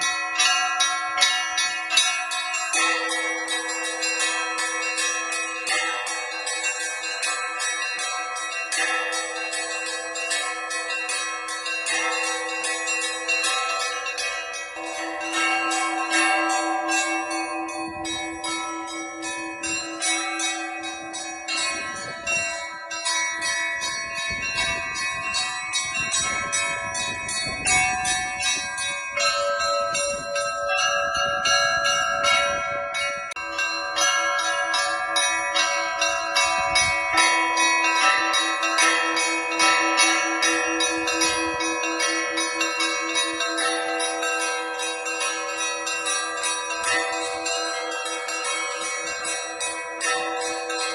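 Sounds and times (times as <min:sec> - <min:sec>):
deep church bells ringing: 0:00.0 - 0:50.9
small church bells rung rhythmically: 0:00.0 - 0:50.9.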